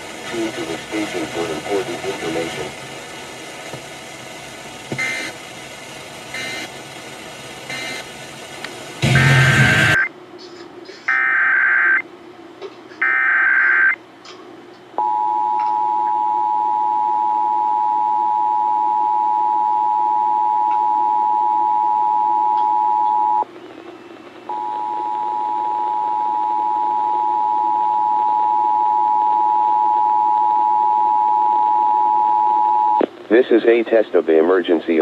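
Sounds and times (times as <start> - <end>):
digital data code burst: 9.0 - 10.1.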